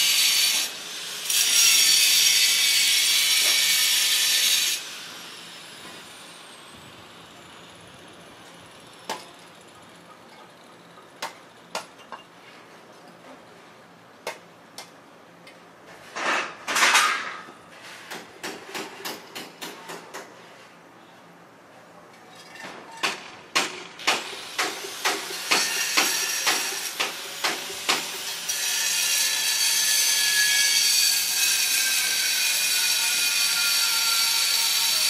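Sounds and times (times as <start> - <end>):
circular saw cutting: 0.0 - 8.2, 24.2 - 35.0.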